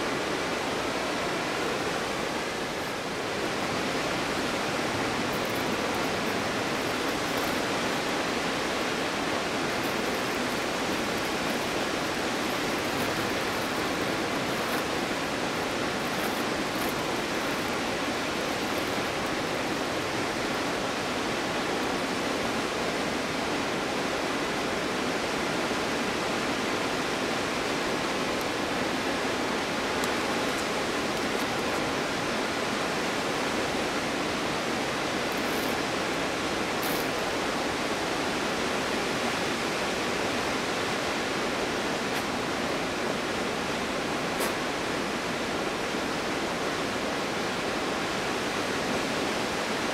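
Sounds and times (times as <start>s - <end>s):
waterfall rushing: 0.0s - 49.9s.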